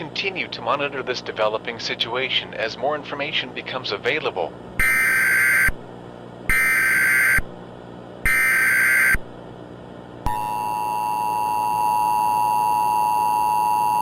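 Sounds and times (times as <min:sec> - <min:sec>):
screeching data signal bursts: 0:04.8 - 0:05.8, 0:06.5 - 0:07.4, 0:08.3 - 0:09.2, 0:10.3 - 0:14.0
steady two-tone attention signal: 0:10.3 - 0:14.0.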